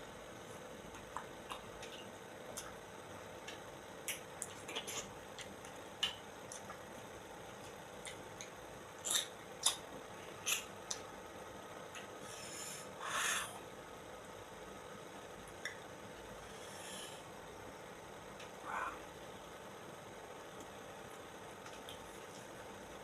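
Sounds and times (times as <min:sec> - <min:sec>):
wet chewing mouth sounds: 0:10.4 - 0:11.0.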